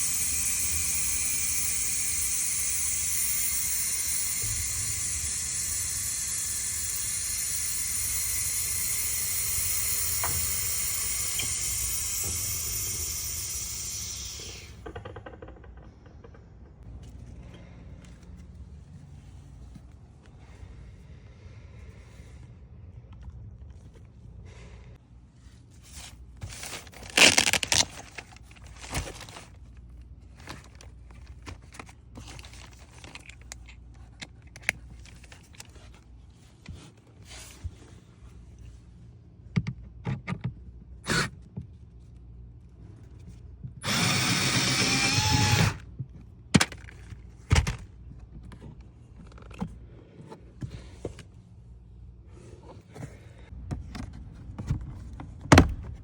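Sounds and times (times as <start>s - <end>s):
power drill running: 0.0s - 14.8s, 43.8s - 45.8s.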